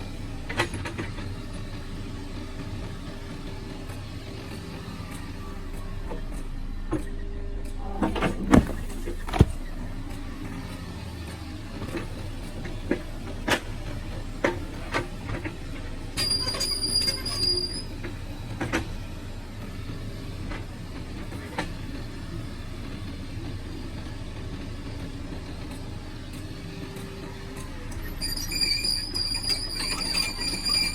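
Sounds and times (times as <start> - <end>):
excavator running: 0.0 - 30.9
high metallic squeal: 16.2 - 18.0, 28.0 - 30.9.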